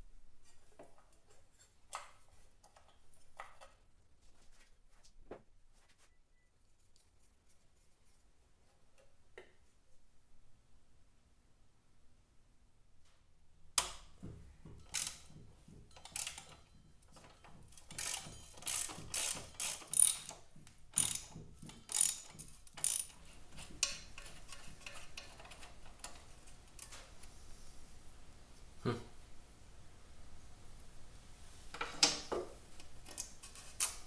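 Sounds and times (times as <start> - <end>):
ratchet rattling: 14.8 - 26.9
hand tools clicking on metal: 14.8 - 27.1, 32.8 - 34.0.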